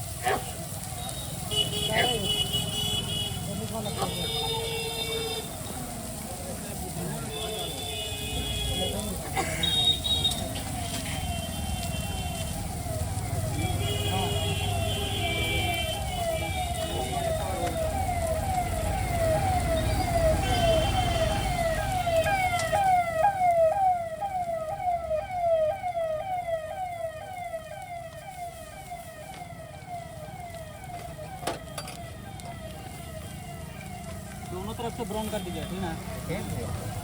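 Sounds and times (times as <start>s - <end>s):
low rumble of road traffic: 0.0s - 37.0s
electronic siren yelping: 9.6s - 13.6s, 14.7s - 37.0s.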